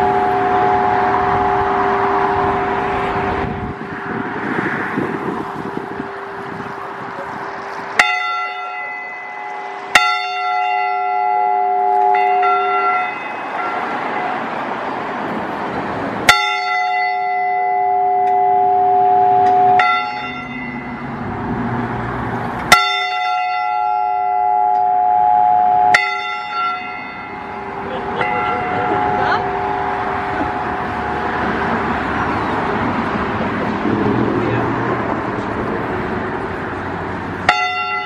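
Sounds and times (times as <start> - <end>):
church bell ringing: 0.0 - 3.8, 5.6 - 14.6, 16.2 - 21.3, 22.7 - 32.5, 37.4 - 38.0
rushing noise: 0.0 - 24.0, 24.9 - 38.0.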